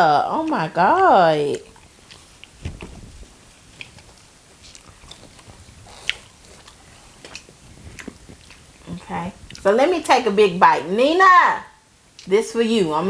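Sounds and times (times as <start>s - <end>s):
chewing and biting food: 0.4s - 9.7s.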